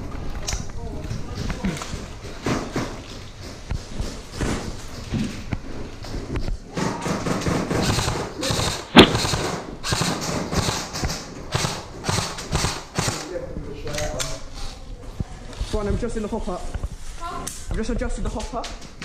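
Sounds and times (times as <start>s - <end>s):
airsoft gun shot: 7.7s - 13.3s
rustling movement: 13.5s - 18.9s.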